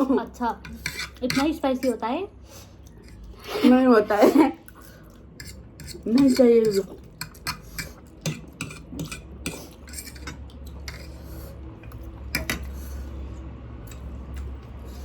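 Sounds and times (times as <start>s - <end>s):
utensils clinking against a dish: 0.6s - 2.0s, 4.7s - 12.7s.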